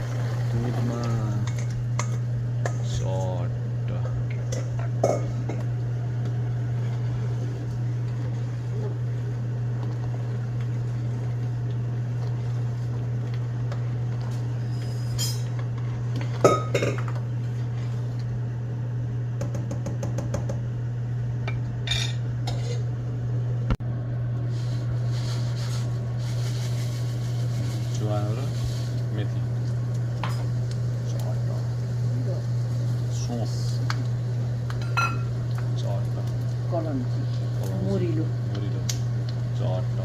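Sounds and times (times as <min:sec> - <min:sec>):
steady low hum: 0:00.0 - 0:40.0
metal utensil scraping a pot: 0:21.9 - 0:22.9.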